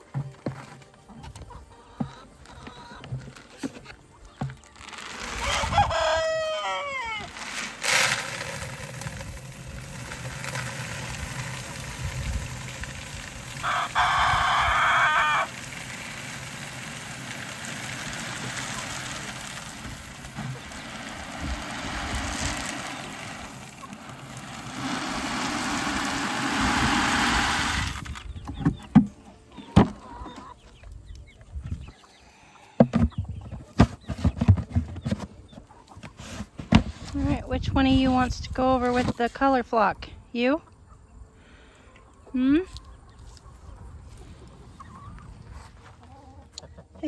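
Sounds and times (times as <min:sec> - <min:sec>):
chickens: 0:00.0 - 0:47.0
rooster crowing: 0:05.3 - 0:07.3, 0:13.6 - 0:15.5.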